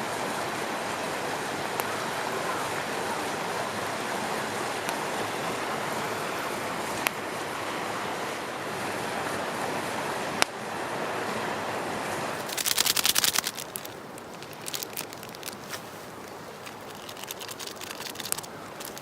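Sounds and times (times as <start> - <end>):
river water rushing: 0.1 - 19.0
rapid crinkling clicks: 12.4 - 19.0
small crackles: 12.4 - 19.0.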